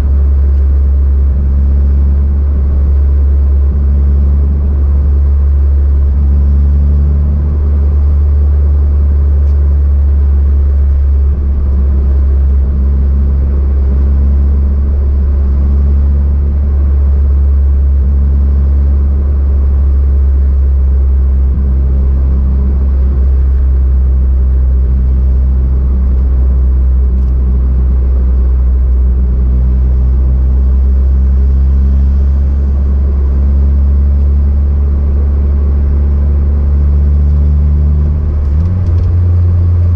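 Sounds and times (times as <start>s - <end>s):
car engine and road rumble: 0.0s - 39.9s.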